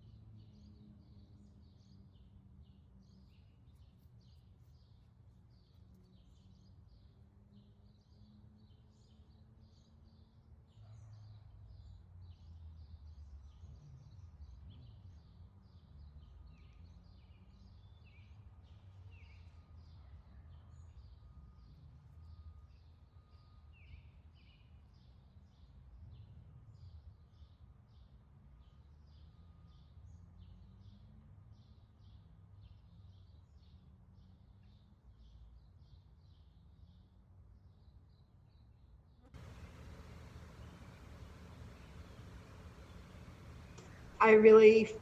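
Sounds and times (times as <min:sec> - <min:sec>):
low background rumble: 0:39.4 - 0:45.0
small birds chirping: 0:39.4 - 0:45.0.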